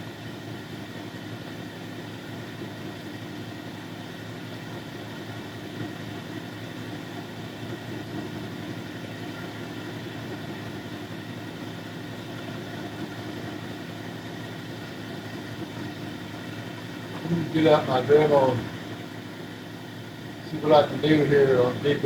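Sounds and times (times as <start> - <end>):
grinding machine motor humming: 0.0 - 22.0.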